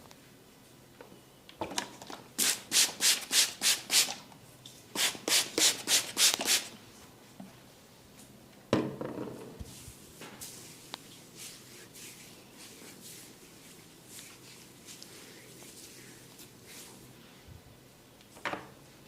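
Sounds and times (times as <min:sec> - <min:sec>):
rubbing strokes over hair: 0:09.7 - 0:17.5.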